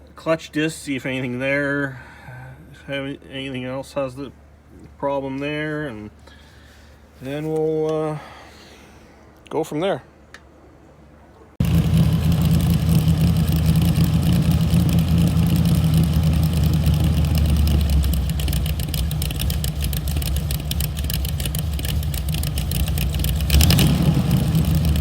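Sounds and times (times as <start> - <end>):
car engine running: 11.6 - 25.0.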